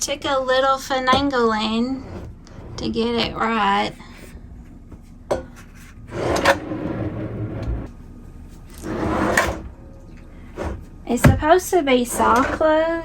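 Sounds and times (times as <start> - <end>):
drawer sliding on runners: 6.1 - 7.9, 8.8 - 9.7.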